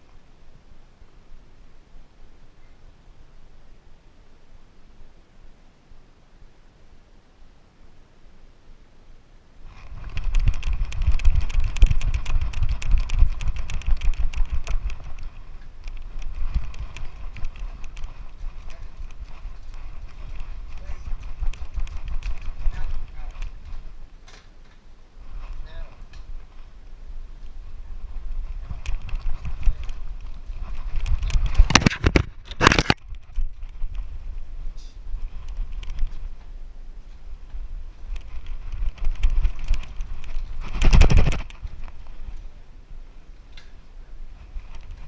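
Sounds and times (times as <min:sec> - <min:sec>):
camera movement thuds and rumble: 0:09.6 - 0:45.0.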